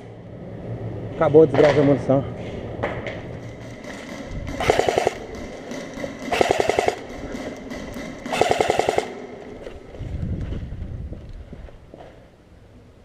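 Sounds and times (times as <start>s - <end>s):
airsoft rifle full-auto bursts: 4.6s - 5.4s, 6.2s - 7.2s, 8.2s - 9.2s.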